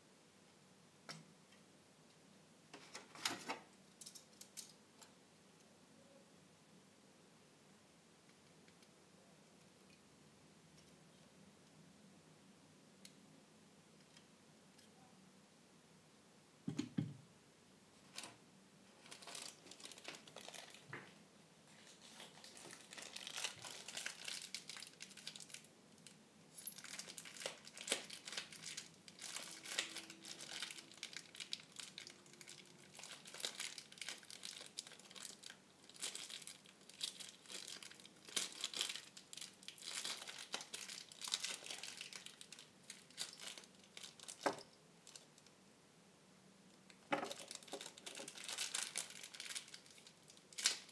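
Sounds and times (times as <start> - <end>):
packaging crinkling and rustling: 18.1 - 45.5, 47.1 - 50.9.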